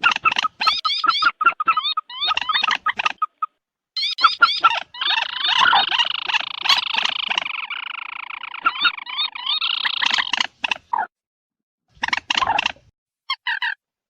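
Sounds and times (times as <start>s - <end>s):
bird chirping: 0.0s - 10.8s.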